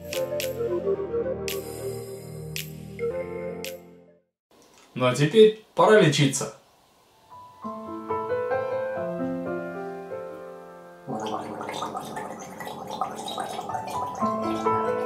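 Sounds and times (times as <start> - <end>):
soft piano music: 7.2 - 12.5, 13.3 - 15.0
person gargling: 11.1 - 15.0.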